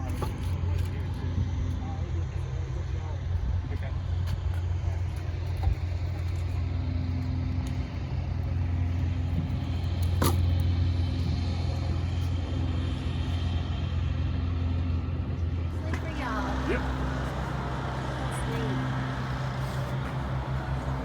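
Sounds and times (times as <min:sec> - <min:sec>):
vehicle engine droning: 0:00.0 - 0:21.0.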